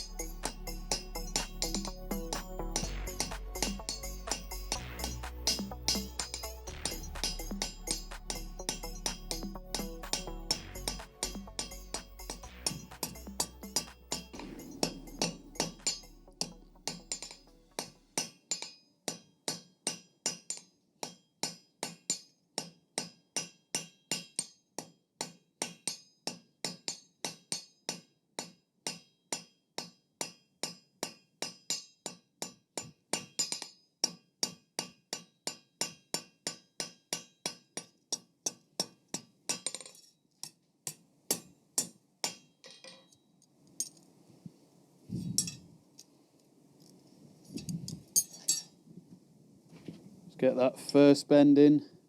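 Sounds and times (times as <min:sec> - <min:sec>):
hammer ringing on anvil: 0:10.8 - 0:16.1
light metal clinks: 0:45.3 - 0:45.7, 0:47.5 - 0:48.8.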